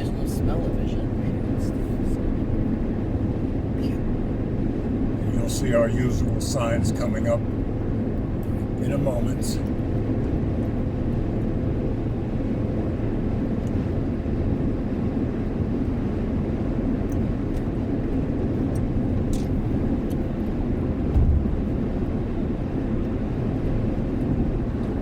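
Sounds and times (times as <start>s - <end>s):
car road and engine noise: 0.0s - 25.0s
low thump: 21.0s - 22.1s.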